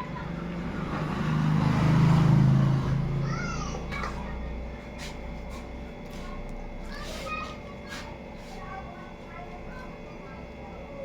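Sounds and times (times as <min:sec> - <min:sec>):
vehicle passing by: 0:00.0 - 0:03.9.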